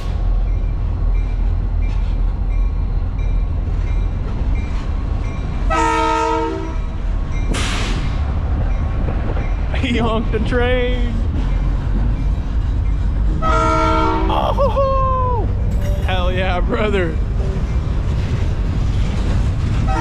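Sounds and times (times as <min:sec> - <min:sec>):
train rumbling past: 0:00.0 - 0:20.0
train horn chord: 0:05.7 - 0:06.8, 0:13.4 - 0:14.3.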